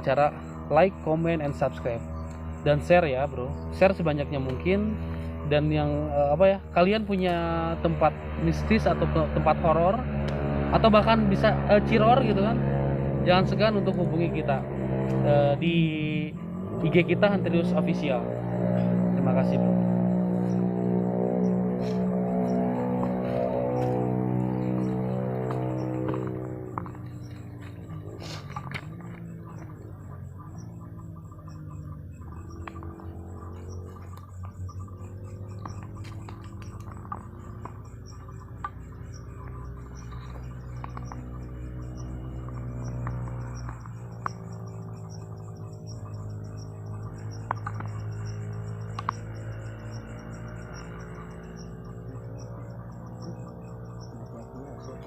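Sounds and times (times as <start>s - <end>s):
crickets chirping: 0.0s - 55.0s
slow music of low tones: 0.1s - 55.0s
faint clicks: 48.9s - 50.0s.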